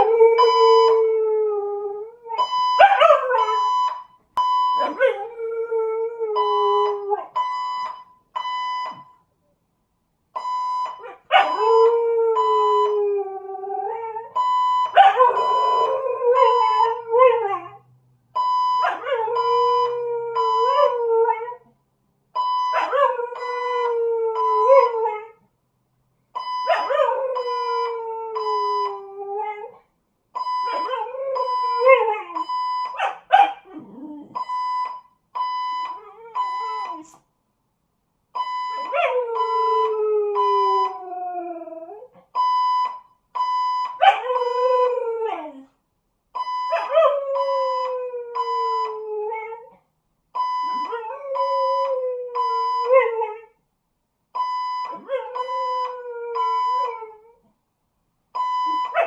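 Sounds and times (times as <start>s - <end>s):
fire alarm beeping: 2.4s - 5.0s, 6.4s - 9.2s, 10.4s - 13.0s, 14.4s - 17.0s, 22.4s - 24.9s, 26.4s - 29.0s, 30.4s - 33.0s, 34.4s - 37.1s, 38.4s - 41.0s, 42.4s - 44.0s, 46.4s - 49.0s, 50.4s - 53.0s, 54.4s - 56.9s, 58.4s - 59.0s.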